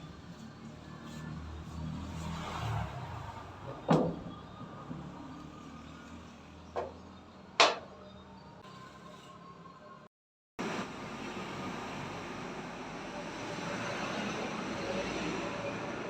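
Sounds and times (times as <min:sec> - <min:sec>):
sharp knocks: 0:07.6 - 0:07.9.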